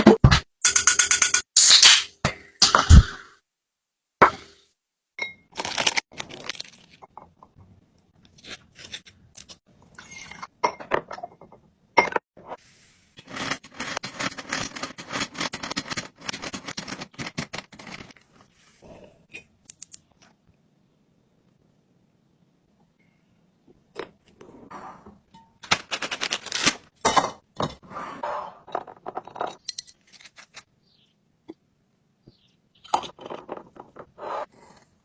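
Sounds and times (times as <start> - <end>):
packaging crinkling and tearing: 5.6 - 7.0, 25.6 - 26.9.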